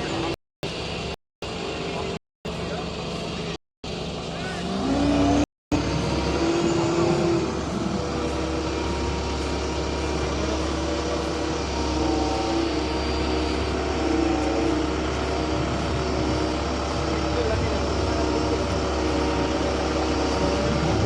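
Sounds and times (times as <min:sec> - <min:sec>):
diesel engine droning: 0:00.0 - 0:21.0.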